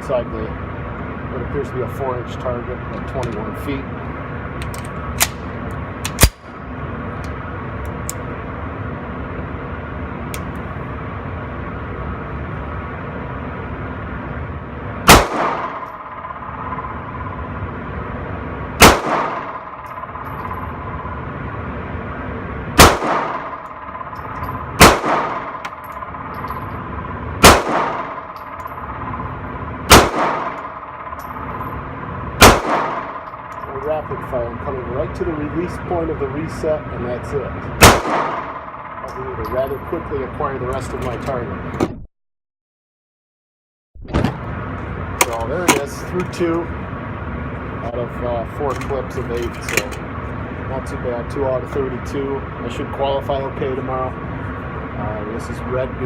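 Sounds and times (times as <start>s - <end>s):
pistol shots with echo: 15.0s - 17.6s, 18.8s - 21.2s, 22.8s - 34.2s, 37.8s - 39.4s.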